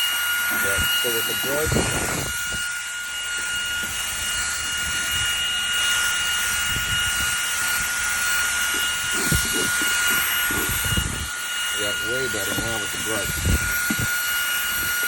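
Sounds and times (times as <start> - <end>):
handheld vacuum whining: 0.0 - 15.0
brush scrubbing carpet: 7.4 - 15.0.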